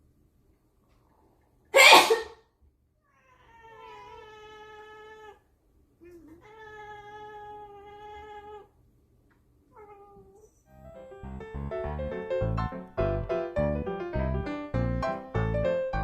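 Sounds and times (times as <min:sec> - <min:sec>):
cat meowing: 0:03.0 - 0:05.4, 0:06.0 - 0:08.7, 0:09.7 - 0:10.6.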